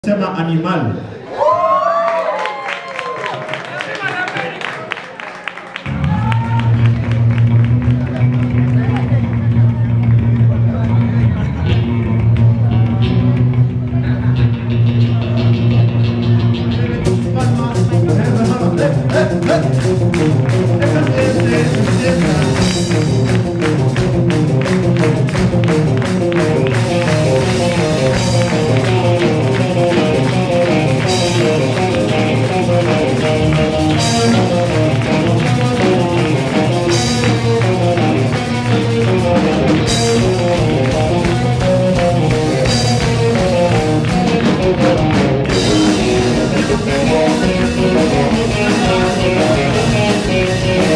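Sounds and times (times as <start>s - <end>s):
bass and drums: 5.8s - 50.9s
picked guitar figure: 11.6s - 50.9s.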